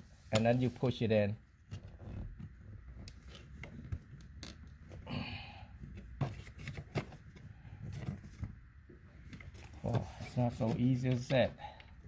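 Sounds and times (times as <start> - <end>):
plastic trim rubbing and scraping: 1.6 - 5.0, 9.3 - 11.6.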